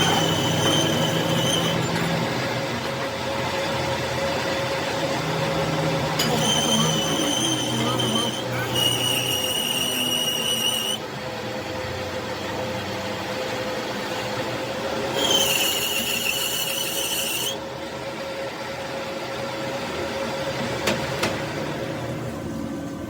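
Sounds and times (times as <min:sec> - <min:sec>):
high whining squeal: 0:00.0 - 0:02.7, 0:05.4 - 0:11.1, 0:15.1 - 0:17.7
workshop machinery humming: 0:00.0 - 0:23.0.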